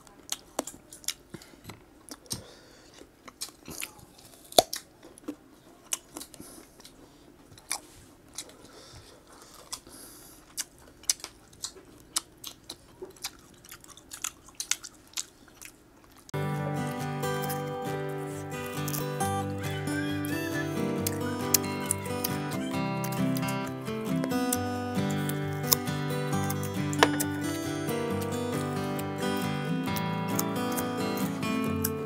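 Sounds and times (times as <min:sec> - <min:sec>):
fruit being bitten and chewed: 0:00.0 - 0:16.3, 0:21.0 - 0:27.4, 0:29.9 - 0:32.0
mouth clicks: 0:17.0 - 0:32.0.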